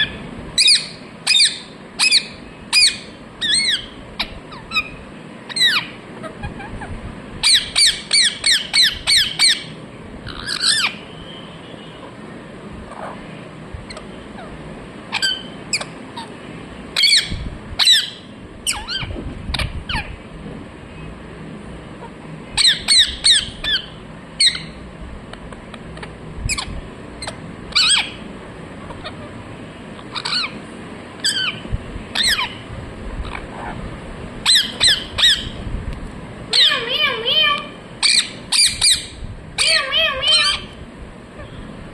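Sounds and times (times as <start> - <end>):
parakeet calling: 0.0 - 20.3, 21.9 - 24.8, 25.4 - 33.8, 34.4 - 35.6, 36.5 - 40.8.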